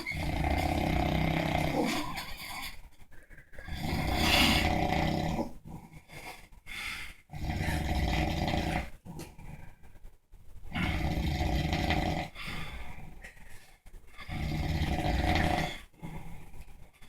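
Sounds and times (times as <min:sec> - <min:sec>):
man snoring heavily: 0:00.1 - 0:02.2, 0:03.7 - 0:05.5, 0:07.3 - 0:08.9, 0:10.8 - 0:12.7, 0:14.3 - 0:15.9
soft breathing: 0:01.8 - 0:04.8, 0:05.5 - 0:07.8, 0:12.2 - 0:14.3.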